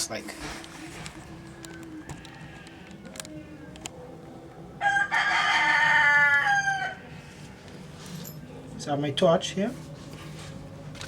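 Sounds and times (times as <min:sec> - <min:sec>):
rooster crowing: 0:01.7 - 0:03.1, 0:04.8 - 0:07.3.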